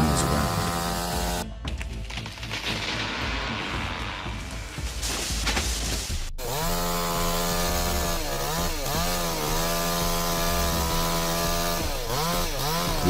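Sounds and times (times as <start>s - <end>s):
chainsaw running at high revs: 0.0s - 1.4s, 6.4s - 13.0s.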